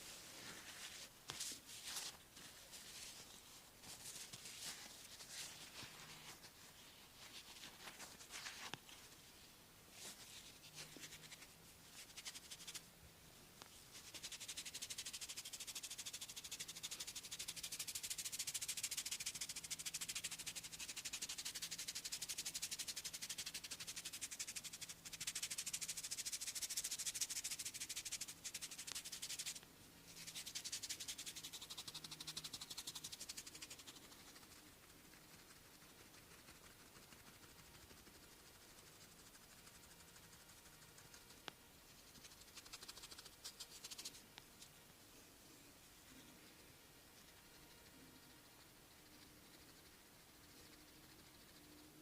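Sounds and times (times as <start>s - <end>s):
hands scratching through hair: 0.0s - 9.1s, 10.0s - 12.9s, 13.9s - 44.7s.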